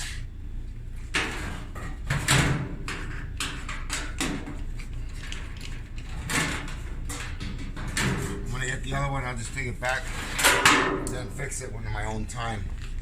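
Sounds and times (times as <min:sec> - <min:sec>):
clothes dryer humming: 0:00.0 - 0:13.0
sharp knocks and clatters: 0:01.1 - 0:08.6, 0:10.0 - 0:11.4.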